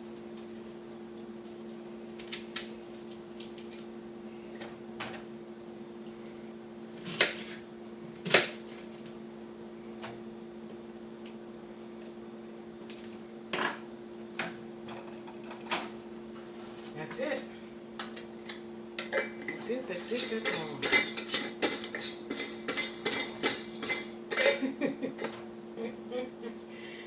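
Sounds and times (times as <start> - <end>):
kitchen utensils clicking and knocking: 19.0 - 24.6.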